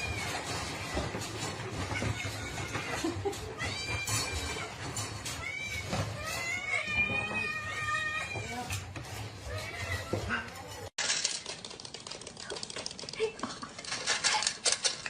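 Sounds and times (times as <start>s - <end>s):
cat meowing: 5.3s - 8.8s.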